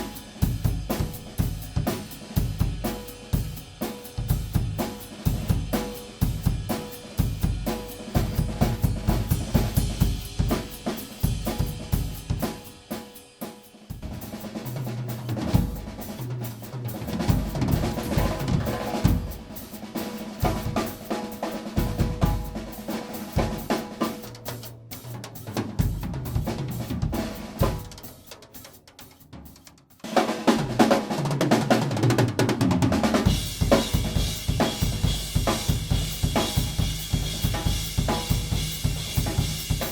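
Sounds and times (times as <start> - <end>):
bass drum: 0.0 - 12.7, 13.9 - 19.6, 23.4 - 28.0, 32.6 - 39.9
snare drum strokes: 26.6 - 31.5.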